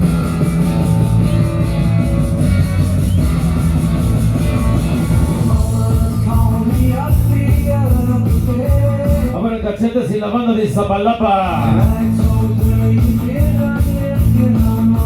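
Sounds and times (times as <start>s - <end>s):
loud rock music: 0.0s - 15.0s.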